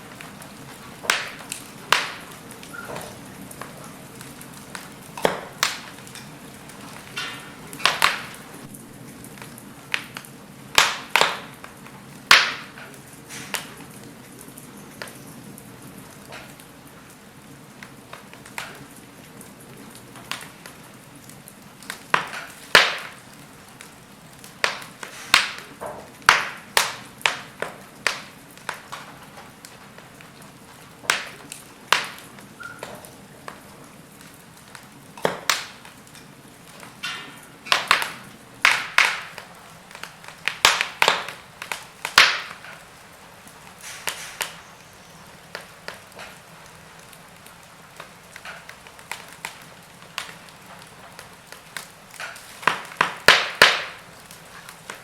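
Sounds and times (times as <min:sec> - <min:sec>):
fire hissing: 0:00.0 - 0:55.0
wood fire crackling and popping: 0:00.0 - 0:55.0.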